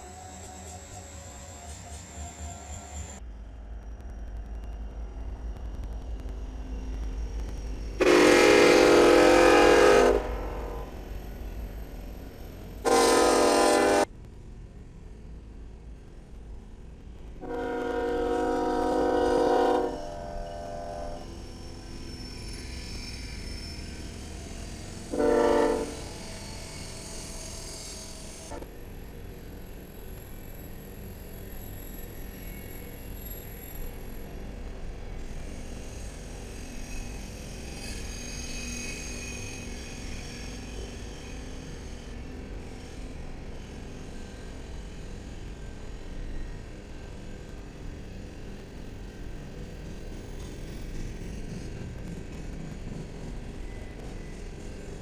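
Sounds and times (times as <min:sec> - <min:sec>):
approaching train rumble: 0:00.0 - 0:55.0
locomotive horn blast: 0:08.0 - 0:10.8, 0:12.9 - 0:14.1, 0:17.4 - 0:21.2, 0:25.2 - 0:26.0.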